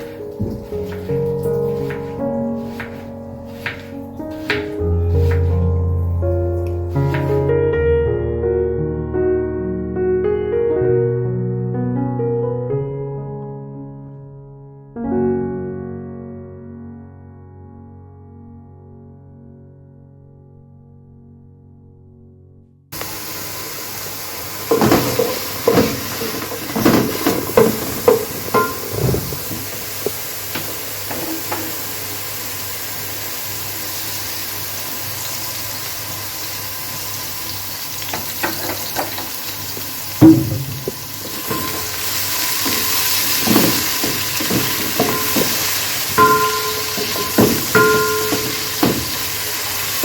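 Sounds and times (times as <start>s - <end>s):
food sizzling in a pan: 0.0s - 7.5s, 23.0s - 50.0s
metal cookware clinking: 0.0s - 7.5s, 24.6s - 29.8s, 30.6s - 31.9s, 38.1s - 39.4s, 40.2s - 50.0s
utensil scraping a pan: 0.0s - 7.5s, 24.7s - 31.9s, 38.1s - 50.0s.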